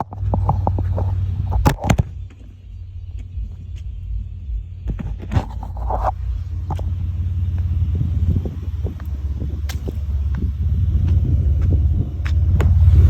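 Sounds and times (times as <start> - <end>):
deep exhaust rumble: 0.0 - 13.0
sharp exhaust pops: 0.0 - 13.0.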